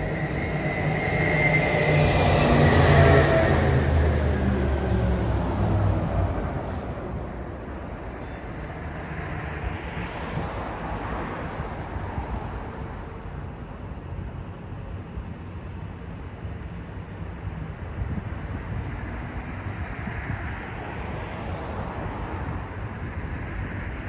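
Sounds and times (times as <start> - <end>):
vehicle passing: 0.0 - 6.6
steady traffic hum: 0.0 - 24.0
vehicle low rumble: 0.0 - 24.0.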